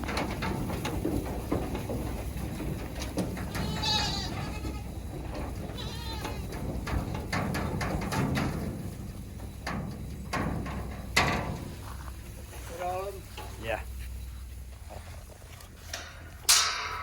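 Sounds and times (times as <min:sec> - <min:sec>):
goats bleating: 0:03.4 - 0:06.6.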